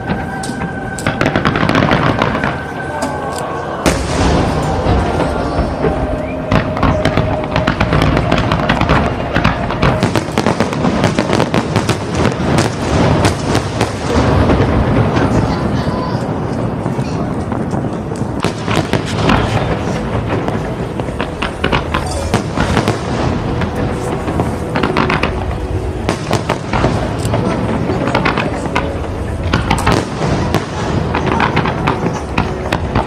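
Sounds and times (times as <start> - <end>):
background music: 0.0 - 15.1, 18.4 - 33.0
fireworks bursting and crackling: 0.0 - 33.0
firework boom: 3.8 - 15.7.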